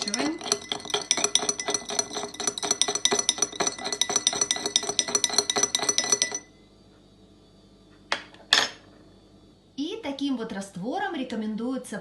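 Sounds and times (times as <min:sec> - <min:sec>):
teaspoon clinking against a glass: 0:00.0 - 0:06.5.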